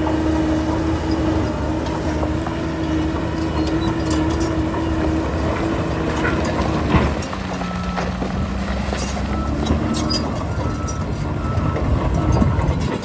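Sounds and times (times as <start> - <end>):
constant machine whine: 0.0 - 13.0
heavy diesel machinery running: 0.0 - 13.0.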